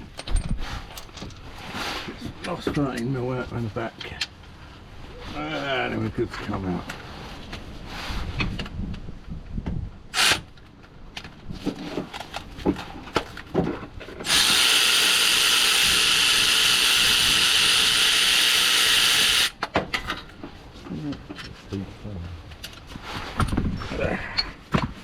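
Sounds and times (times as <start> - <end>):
metal clicks and knocks: 0.0 - 1.4
power tool running: 14.2 - 19.6.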